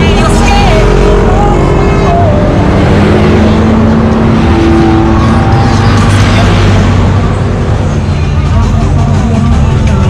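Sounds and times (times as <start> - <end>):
vehicle engine rough rumble: 0.0 - 10.0.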